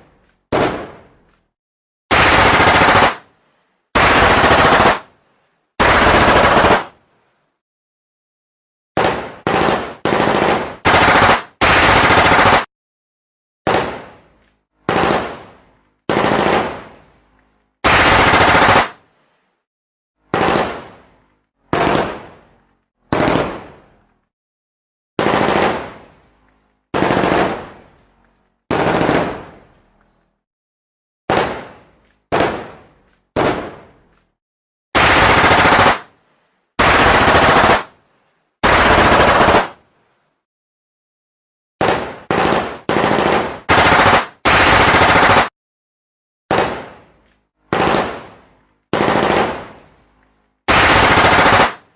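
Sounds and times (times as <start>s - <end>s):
automatic gunfire bursts: 2.1s - 3.2s, 4.0s - 5.1s, 5.8s - 6.9s, 9.0s - 12.7s, 14.9s - 15.4s, 16.1s - 16.8s, 17.8s - 19.0s, 23.1s - 23.6s, 25.2s - 25.9s, 27.0s - 27.6s, 28.7s - 29.4s, 35.0s - 36.1s, 36.8s - 37.9s, 38.6s - 39.8s, 41.8s - 45.5s, 47.7s - 48.2s, 48.9s - 49.7s, 50.7s - 51.9s.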